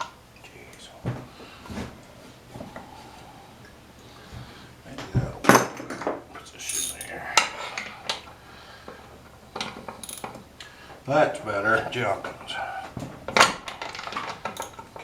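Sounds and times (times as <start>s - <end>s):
metal tools clinking and clanking: 5.5s - 8.3s, 9.6s - 10.4s, 13.3s - 15.0s.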